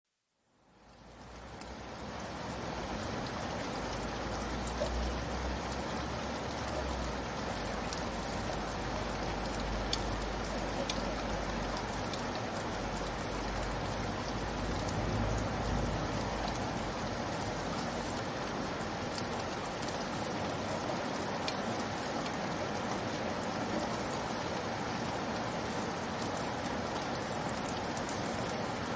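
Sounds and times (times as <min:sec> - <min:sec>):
light rainfall: 0:00.1 - 0:28.9
rain drop ticks: 0:00.7 - 0:28.9
low rumble: 0:14.4 - 0:17.2.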